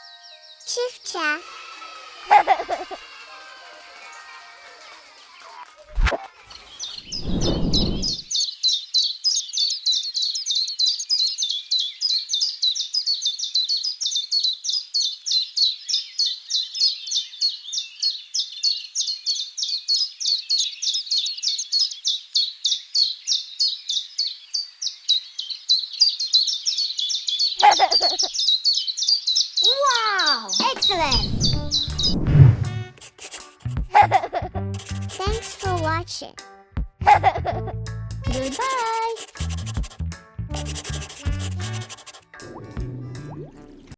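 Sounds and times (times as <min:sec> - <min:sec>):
brief low rumble: 0:07.1 - 0:08.2, 0:31.0 - 0:32.9
bird singing high notes: 0:29.6 - 0:33.1.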